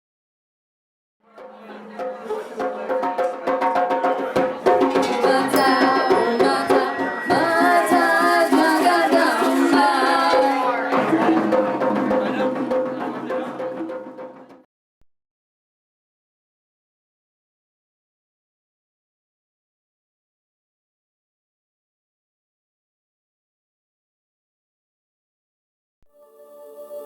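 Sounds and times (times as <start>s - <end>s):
hand drum percussion: 1.4s - 14.6s
drone tones: 5.2s - 11.5s.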